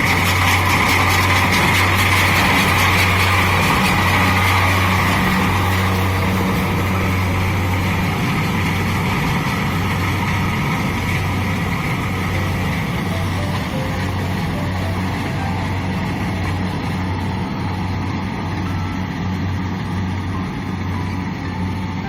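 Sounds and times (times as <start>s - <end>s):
combine harvester running: 0.0s - 22.0s.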